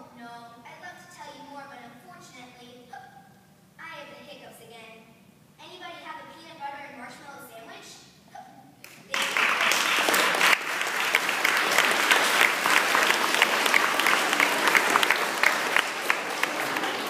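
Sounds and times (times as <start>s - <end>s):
audience applause: 9.1s - 17.0s.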